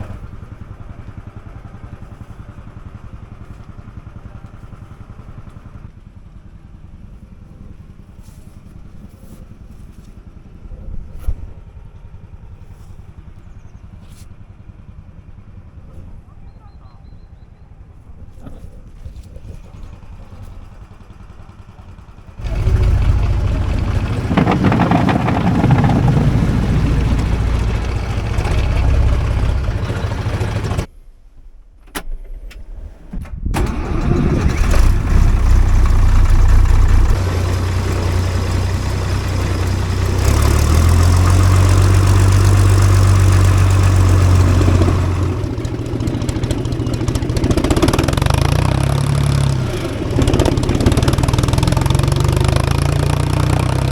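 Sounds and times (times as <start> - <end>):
tractor engine running: 0.0 - 8.6, 18.9 - 30.9, 33.6 - 53.9.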